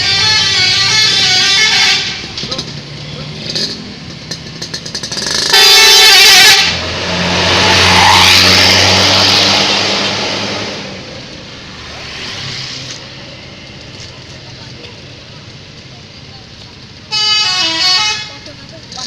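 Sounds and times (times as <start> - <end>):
musical air horn blast: 0.0 - 2.4, 5.5 - 6.8, 17.1 - 18.3
coach engine and tyre noise: 0.0 - 19.0.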